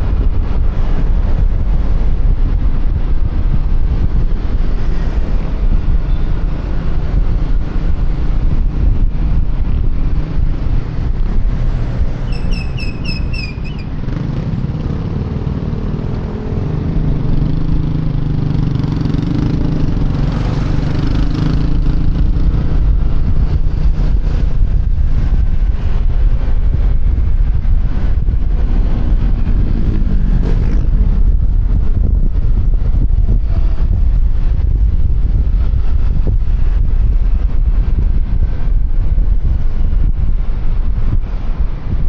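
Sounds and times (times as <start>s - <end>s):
wind and road noise: 0.0s - 42.0s
quick high chirps: 12.3s - 14.0s.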